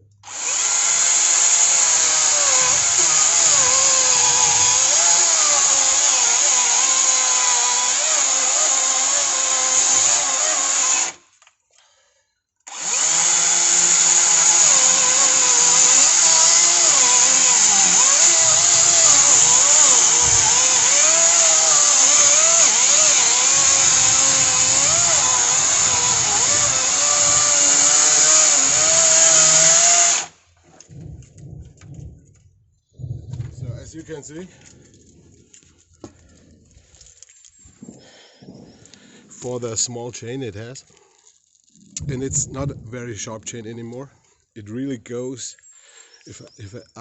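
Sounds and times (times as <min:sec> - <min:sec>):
chainsaw cutting log: 0:00.2 - 0:11.4, 0:12.7 - 0:31.1.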